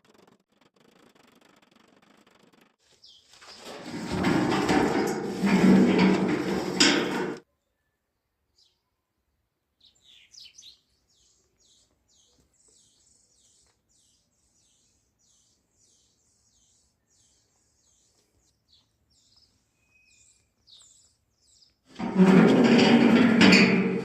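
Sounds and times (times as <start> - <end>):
small bird chirping: 2.8 - 3.6, 9.8 - 21.9.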